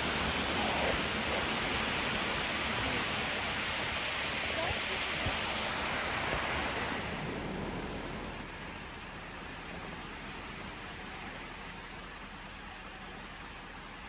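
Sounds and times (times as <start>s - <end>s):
floodwater rushing: 0.0s - 11.9s.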